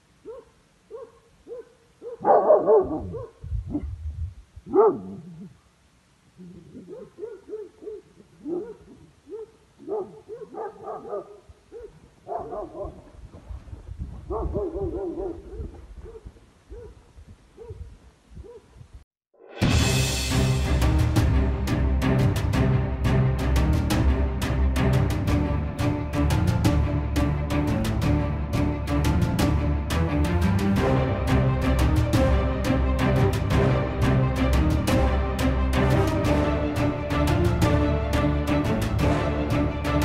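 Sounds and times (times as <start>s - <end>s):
dogs barking and yelping: 0.2s - 3.9s, 4.7s - 5.5s, 6.4s - 13.1s, 14.3s - 18.7s.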